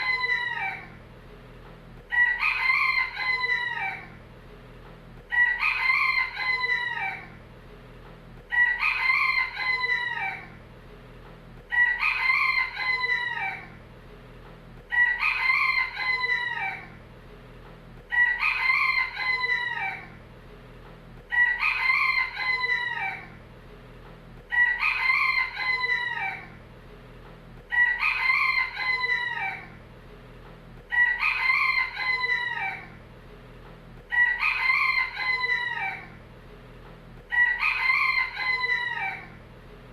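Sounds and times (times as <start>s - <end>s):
rooster crowing: 0.0s - 1.0s, 2.1s - 4.2s, 5.3s - 7.4s, 8.5s - 10.6s, 11.7s - 13.8s, 14.9s - 17.0s, 18.1s - 20.2s, 21.3s - 23.4s, 24.5s - 26.6s, 27.7s - 29.8s, 30.9s - 33.0s, 34.1s - 36.2s, 37.2s - 39.4s
faint steady low hum: 0.0s - 39.9s.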